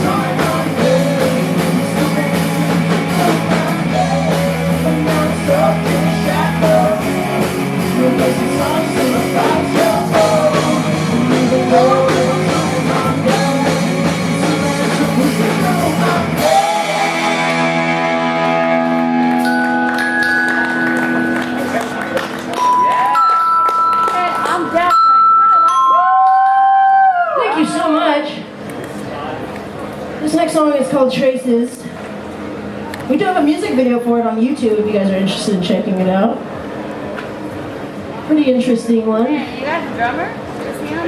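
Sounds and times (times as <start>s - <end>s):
lead vocal singing: 0.0s - 18.7s
live rock band: 0.0s - 24.8s
held keyboard chord: 0.0s - 26.1s.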